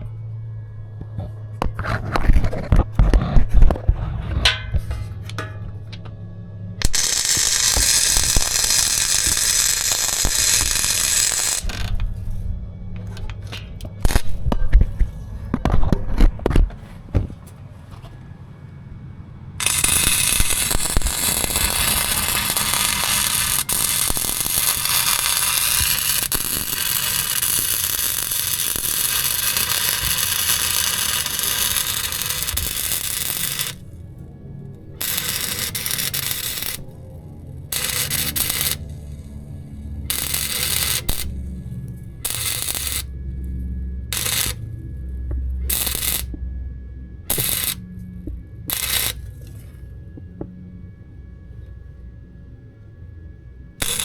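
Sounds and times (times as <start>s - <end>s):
low hum: 0.0s - 54.0s
welding arc crackling: 6.8s - 12.0s, 14.0s - 14.4s, 19.6s - 34.0s, 35.0s - 37.0s, 37.7s - 39.4s, 40.1s - 43.1s, 44.1s - 44.7s, 45.7s - 46.4s, 47.3s - 47.8s, 48.7s - 49.5s, 53.8s - 54.0s.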